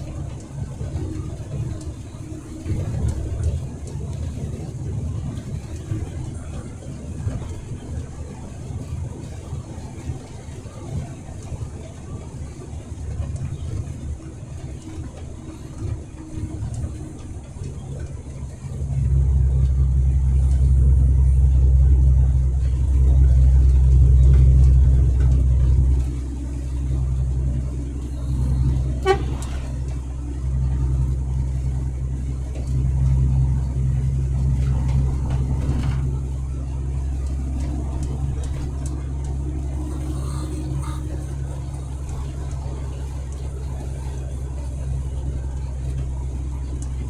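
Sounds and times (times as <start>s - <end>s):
truck engine droning: 0.0s - 47.0s
short horn toot: 27.7s - 30.0s.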